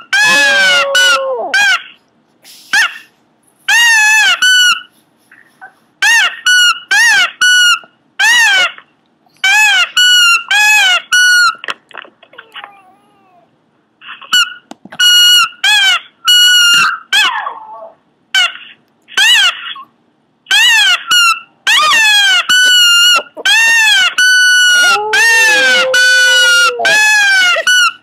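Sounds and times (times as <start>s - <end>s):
small dog squeaky cries: 0.0s - 1.9s, 3.7s - 4.9s, 14.4s - 19.8s, 20.5s - 28.0s.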